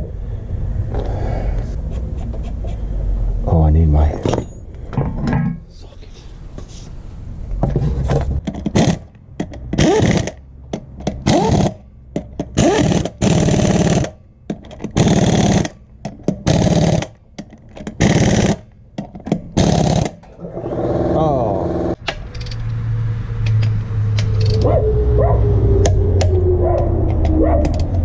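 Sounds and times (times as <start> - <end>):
impact wrench rattling bursts: 8.6 - 10.4, 11.0 - 17.2, 17.8 - 18.7, 19.6 - 22.6.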